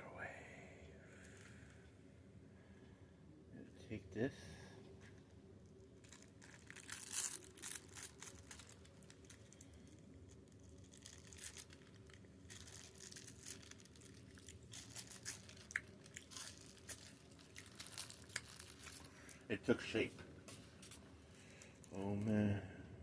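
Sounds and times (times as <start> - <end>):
plastic film crinkling: 6.0 - 19.5.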